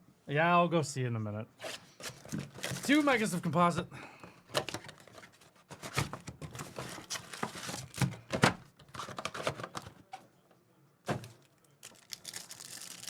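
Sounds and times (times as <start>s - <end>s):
packaging crinkling and tearing: 1.6s - 3.3s, 4.7s - 10.0s, 11.1s - 13.0s.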